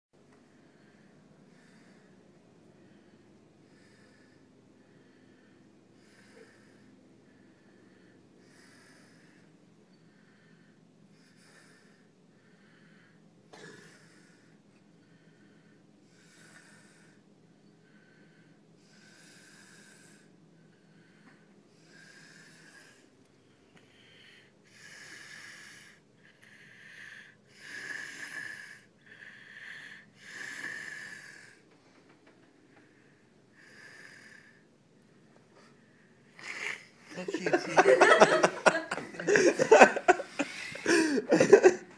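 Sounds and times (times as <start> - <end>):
soft snoring: 2.8 - 17.2, 17.8 - 23.1, 23.8 - 32.0, 32.7 - 34.7, 35.5 - 37.3
wheezy whistling snoring: 16.1 - 20.3, 21.7 - 23.1, 24.7 - 26.0, 27.0 - 31.6, 33.6 - 34.7
loud snort: 36.4 - 37.0.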